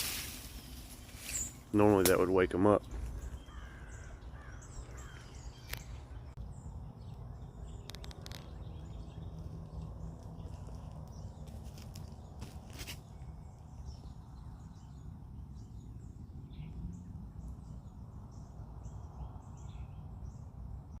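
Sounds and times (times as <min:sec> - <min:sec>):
low outdoor rumble: 0:00.0 - 0:21.0
bird chirps: 0:01.2 - 0:12.4.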